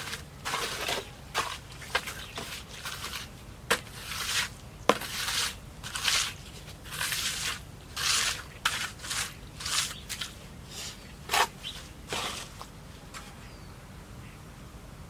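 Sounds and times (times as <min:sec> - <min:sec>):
dry material rustling and scraping: 0:00.0 - 0:13.4.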